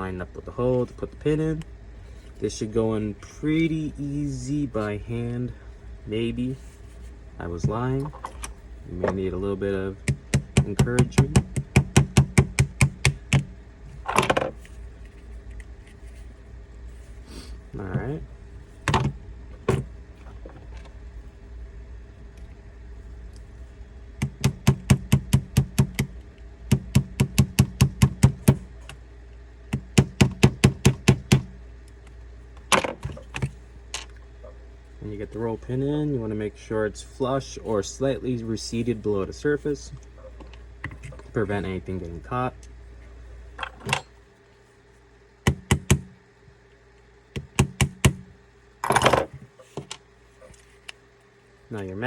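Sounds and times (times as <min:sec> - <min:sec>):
hammer tapping a pin: 0:10.0 - 0:13.5, 0:24.2 - 0:26.1, 0:26.7 - 0:28.7, 0:29.7 - 0:31.5.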